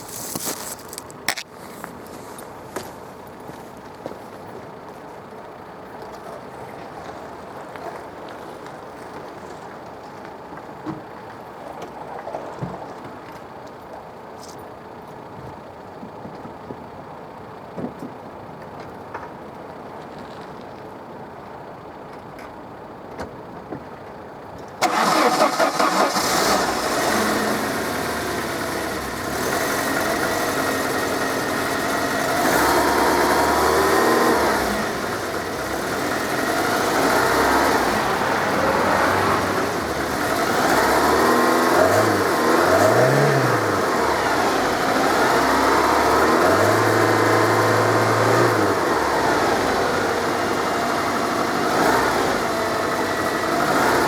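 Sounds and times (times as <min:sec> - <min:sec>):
car engine starting and revving: 0:24.8 - 0:54.0.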